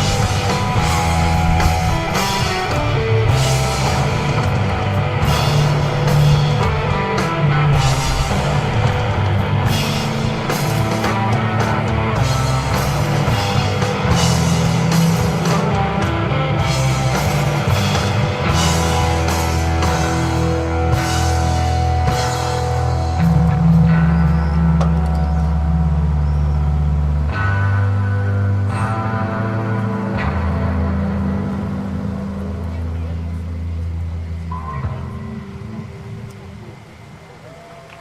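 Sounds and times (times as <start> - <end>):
drumming with cymbal strokes: 0.0 - 26.6
bass guitar notes: 0.0 - 37.4
electric guitar: 0.0 - 38.0.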